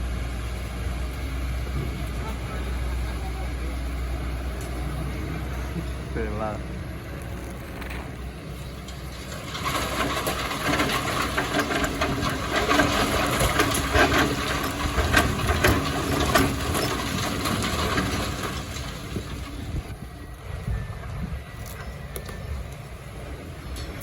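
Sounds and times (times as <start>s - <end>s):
excavator engine running: 0.0s - 24.0s
rock and sand clattering: 7.3s - 20.4s.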